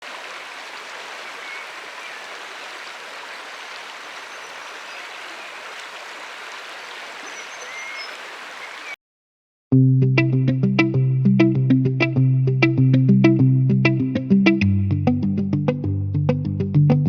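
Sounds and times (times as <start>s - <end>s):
river water flowing: 0.0s - 9.0s
faint high chirps: 1.1s - 2.8s, 6.8s - 9.0s.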